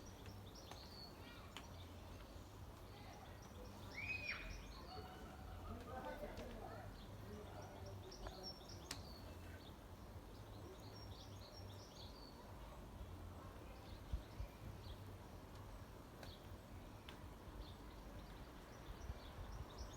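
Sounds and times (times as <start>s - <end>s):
small birds chirping: 0.0s - 19.9s
faint clicks: 0.2s - 2.9s, 15.5s - 17.3s.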